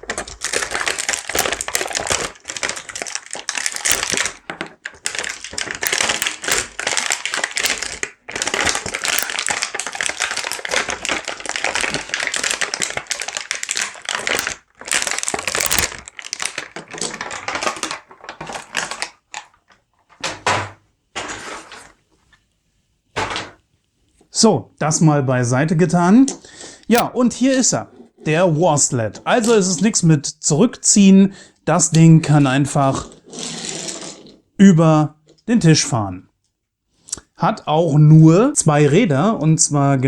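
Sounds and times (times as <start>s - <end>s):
plastic packaging crinkling: 0.0s - 20.1s.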